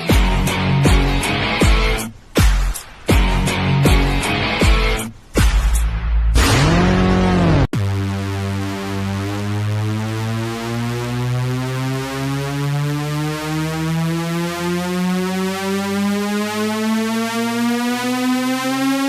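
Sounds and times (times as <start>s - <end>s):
synthesizer ringtone rising notes: 6.4s - 19.0s.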